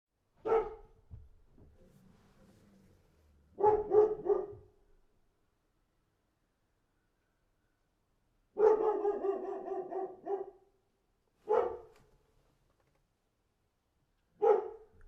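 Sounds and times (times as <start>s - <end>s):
dog barking: 0.4s - 1.0s, 3.5s - 4.8s, 8.5s - 10.8s, 11.4s - 12.0s, 14.4s - 15.0s.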